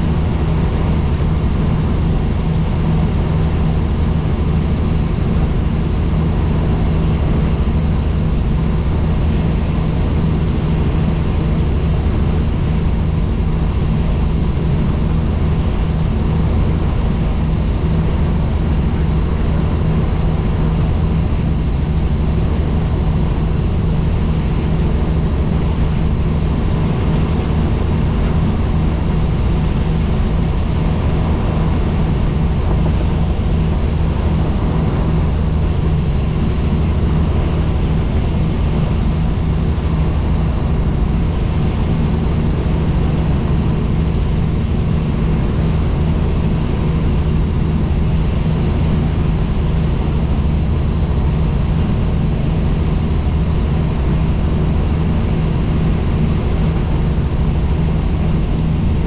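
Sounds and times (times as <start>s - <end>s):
helicopter engine and rotor drone: 0.0s - 59.0s.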